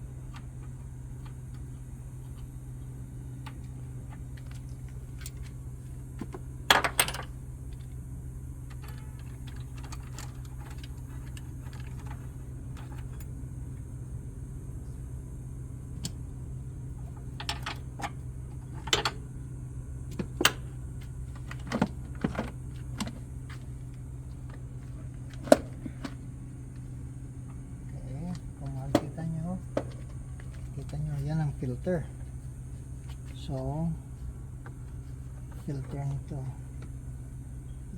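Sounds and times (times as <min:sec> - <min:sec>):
steady low hum: 0:00.0 - 0:37.9.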